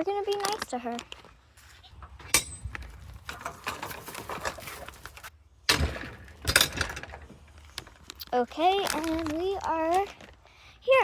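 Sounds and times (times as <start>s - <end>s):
rustling and crackles: 0.0s - 11.0s
footsteps scuffing: 0.3s - 2.3s.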